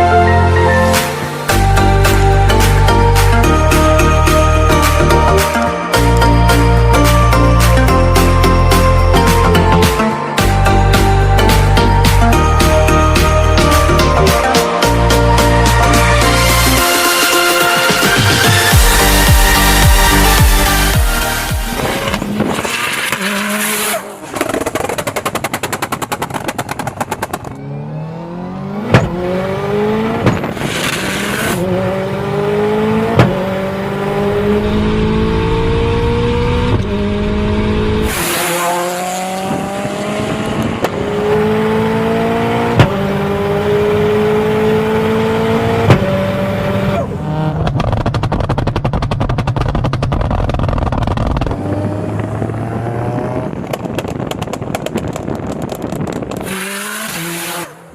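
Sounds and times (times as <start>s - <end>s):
car engine accelerating: 10.9s - 57.9s
exhaust crackling and popping: 21.7s - 27.6s, 39.2s - 41.2s, 47.2s - 57.7s.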